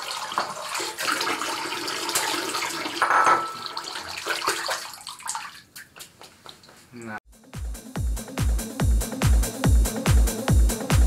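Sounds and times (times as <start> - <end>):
water running and splashing: 0.0 - 6.6.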